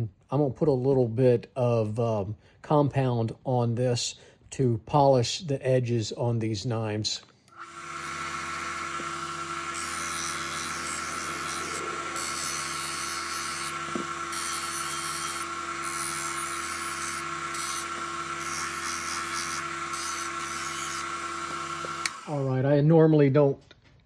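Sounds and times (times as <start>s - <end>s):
knife hissing on polishing wheel: 7.6s - 22.2s
grinder motor humming and whining: 7.6s - 22.4s.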